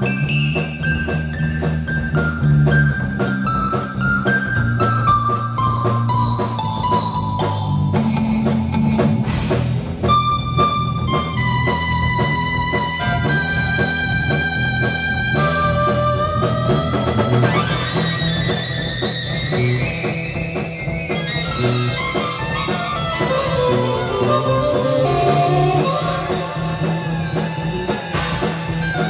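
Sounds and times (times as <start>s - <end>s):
bass and drum kit: 0.0s - 29.0s
electric guitar bending lines: 0.0s - 29.0s
held keyboard-like notes: 0.0s - 29.0s.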